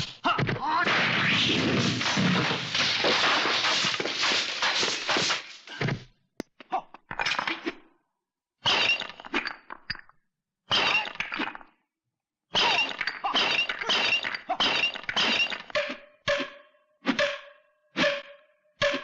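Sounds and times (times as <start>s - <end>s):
sharp cracks: 0.8s - 5.8s
crunching and breaking: 0.9s - 5.7s.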